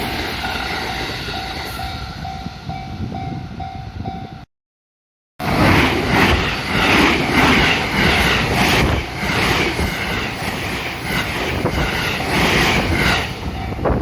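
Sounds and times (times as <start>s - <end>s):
train wheels clacking on rails: 5.4s - 14.0s.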